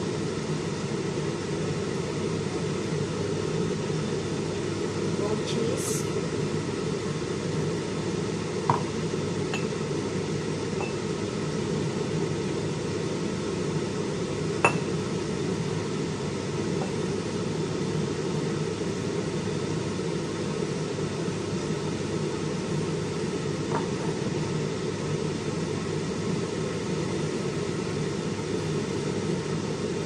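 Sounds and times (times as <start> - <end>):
steady low hum: 0.0 - 30.0
glass jar clinking: 14.7 - 14.9.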